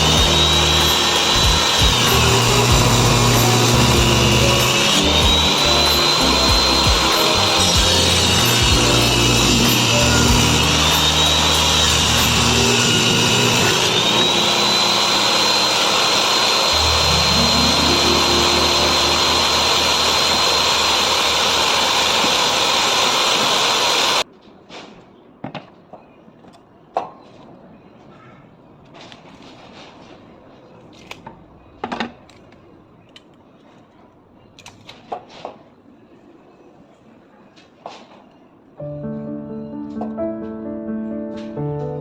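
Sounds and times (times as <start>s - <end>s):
power tool whining cutting wood: 0.0s - 24.2s.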